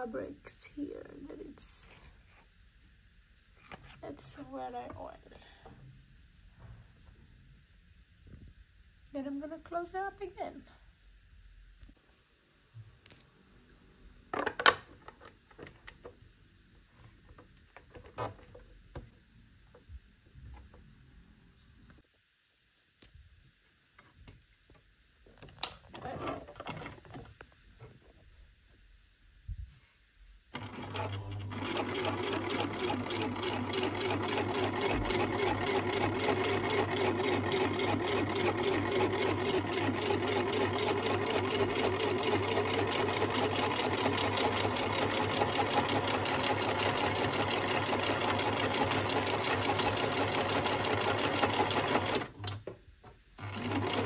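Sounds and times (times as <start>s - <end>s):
sewing machine stitching: 25.9s - 27.2s, 30.5s - 52.6s, 53.4s - 54.0s.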